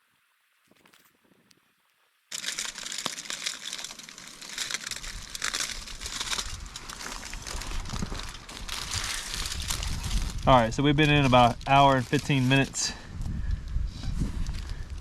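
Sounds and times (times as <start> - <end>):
campfire crackling and popping: 2.3 - 12.9
low rumble: 5.0 - 11.0.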